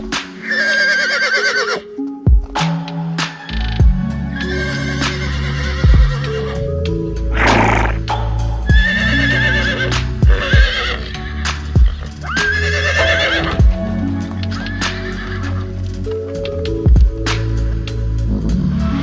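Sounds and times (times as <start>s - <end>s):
music with low beat: 0.0s - 0.4s, 2.0s - 19.0s
animal calling high-pitched: 0.4s - 1.9s, 4.3s - 6.6s, 8.7s - 11.5s, 12.2s - 13.6s.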